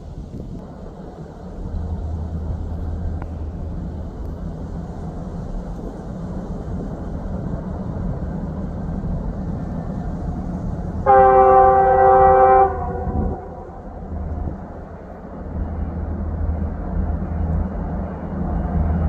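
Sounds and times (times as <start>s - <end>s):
train rumbling: 0.0s - 19.0s
locomotive horn blast: 11.0s - 14.5s.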